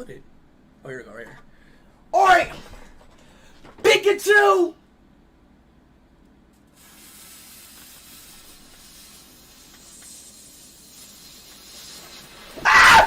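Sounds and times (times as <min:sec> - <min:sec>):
firework fountain hissing: 0:06.7 - 0:12.7.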